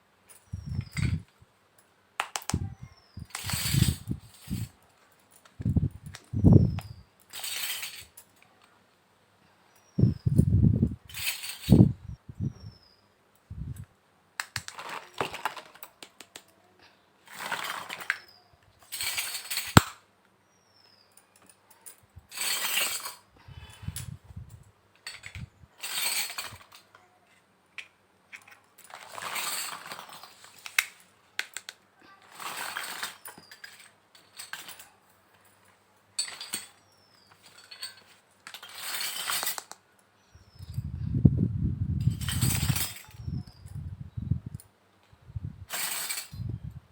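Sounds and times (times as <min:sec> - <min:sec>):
small clinks of tiny parts: 0:00.3 - 0:08.8, 0:14.6 - 0:20.0, 0:20.8 - 0:41.0, 0:42.0 - 0:43.9, 0:45.7 - 0:46.6
rustling scrapes of toy pieces: 0:03.3 - 0:04.8, 0:07.3 - 0:08.2, 0:11.1 - 0:11.9, 0:14.7 - 0:15.9, 0:17.3 - 0:19.8, 0:22.3 - 0:23.2, 0:25.1 - 0:27.4, 0:28.5 - 0:31.0, 0:31.6 - 0:34.9, 0:36.2 - 0:39.8.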